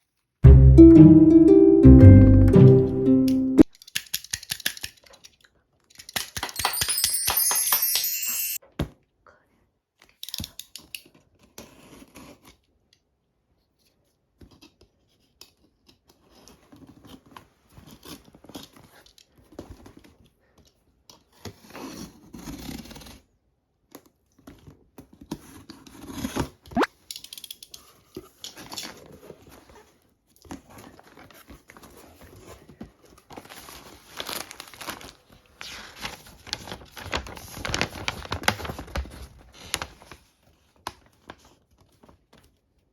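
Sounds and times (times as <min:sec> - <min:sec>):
crinkling plastic and paper: 0:30.5 - 0:42.9.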